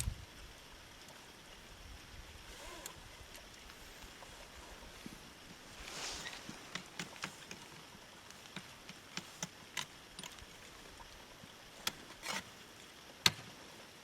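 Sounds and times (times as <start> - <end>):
short scrape: 5.8 - 6.6.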